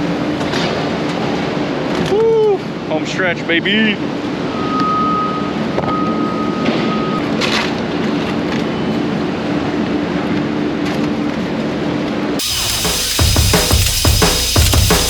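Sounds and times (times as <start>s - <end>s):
high whine: 12.4s - 15.0s.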